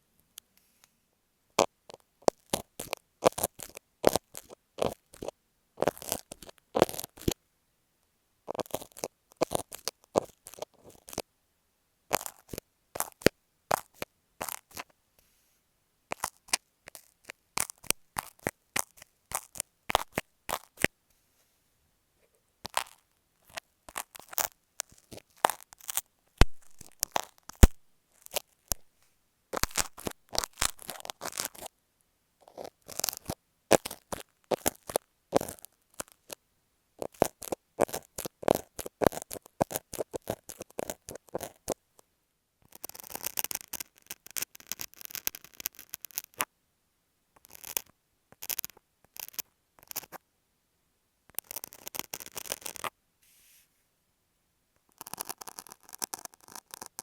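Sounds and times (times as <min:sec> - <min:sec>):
pins and tape tapping on microphones: 0:22.7 - 0:28.9.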